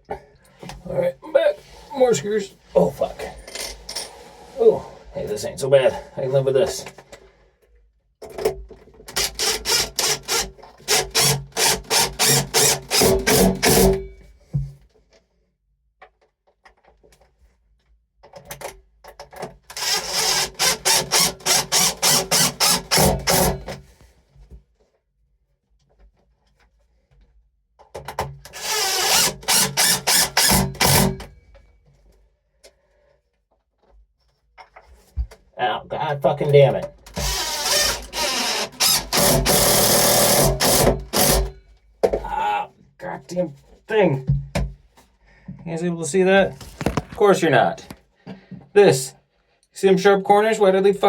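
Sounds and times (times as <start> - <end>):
power drill driving screws: 9.1 - 14.0, 19.7 - 23.8, 28.5 - 31.3, 37.1 - 41.5.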